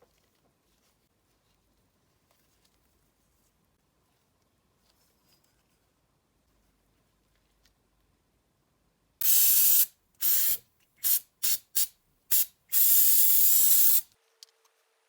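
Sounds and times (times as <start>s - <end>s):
hissing spray bursts: 9.2s - 14.1s.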